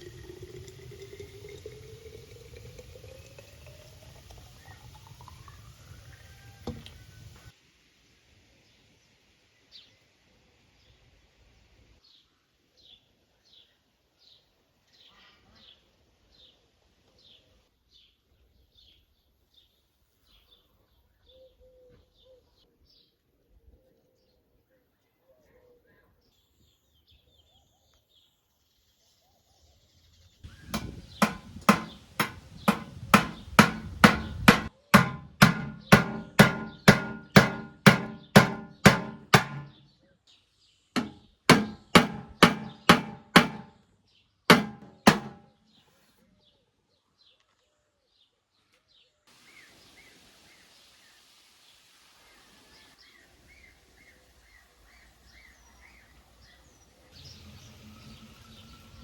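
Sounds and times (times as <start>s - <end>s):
faint birdsong: 0.0s - 7.6s, 8.4s - 59.0s
sharp ringing knocks: 30.7s - 39.8s, 41.0s - 43.8s, 44.5s - 45.5s.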